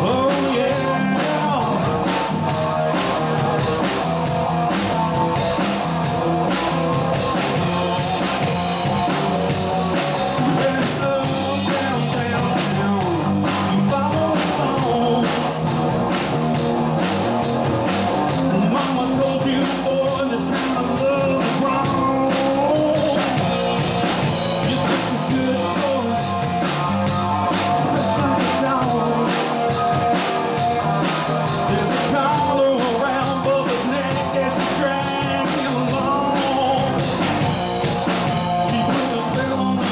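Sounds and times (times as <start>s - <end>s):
person singing: 0.0s - 4.0s, 7.0s - 15.8s, 18.3s - 39.9s
drum kit: 0.0s - 39.9s
electric guitar: 0.0s - 39.9s.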